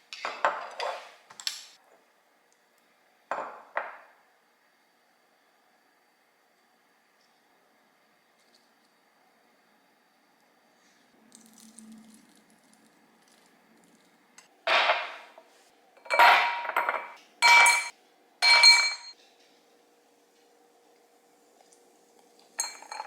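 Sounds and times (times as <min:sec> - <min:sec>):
glassware clinking: 0:16.0 - 0:19.2, 0:22.6 - 0:23.0.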